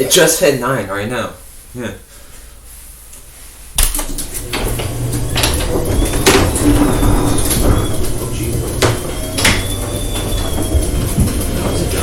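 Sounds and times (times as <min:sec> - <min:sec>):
door rattling along its track: 0:03.8 - 0:12.0
garage door opener motor hum: 0:03.8 - 0:12.0
faint squeaks: 0:04.6 - 0:12.0.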